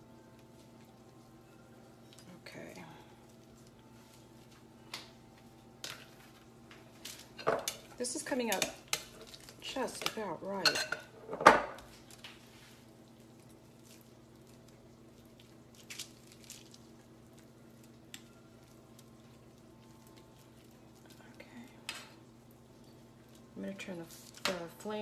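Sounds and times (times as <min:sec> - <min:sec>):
steady low hum: 0:00.0 - 0:25.0
utensils and dishes clinking: 0:10.5 - 0:11.8.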